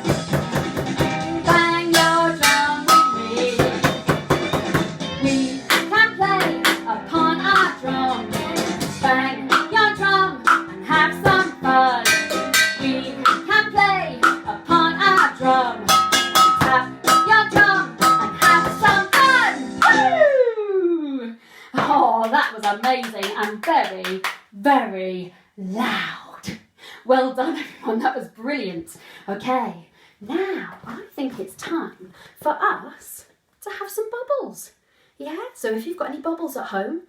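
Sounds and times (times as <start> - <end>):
sharp percussive hits: 0.0 - 5.0, 5.6 - 6.9, 8.4 - 19.9
person singing: 1.4 - 21.4
people clapping: 6.5 - 6.8, 22.2 - 24.5.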